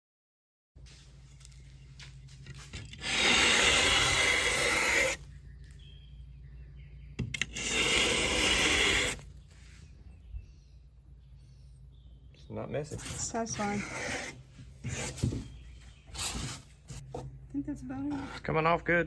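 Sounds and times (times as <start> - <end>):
scraping strokes on hard shell: 2.8 - 5.3, 7.4 - 9.3, 12.9 - 17.1.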